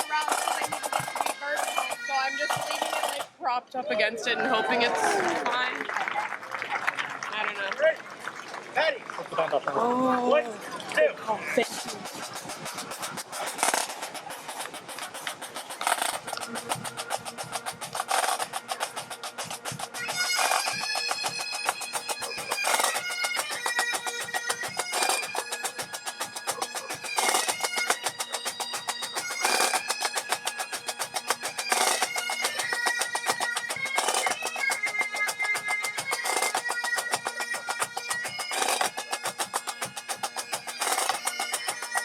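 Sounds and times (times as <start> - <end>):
bagpipe chanter melody: 0.0 - 3.2, 12.0 - 42.0
snare drums rolling: 0.0 - 3.2, 11.6 - 42.0
bagpipe drones: 0.0 - 3.3, 11.2 - 42.0.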